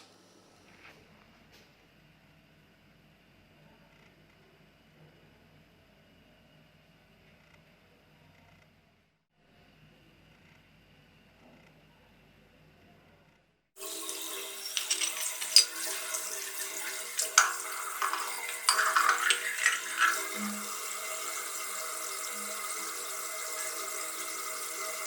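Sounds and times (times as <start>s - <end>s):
tap water running and splashing: 13.8s - 25.0s.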